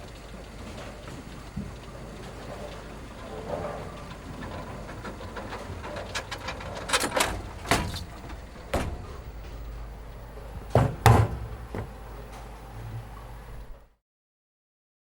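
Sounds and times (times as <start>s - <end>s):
steady low hum: 0.0s - 14.0s
sharp knocks or bangs: 10.7s - 11.9s.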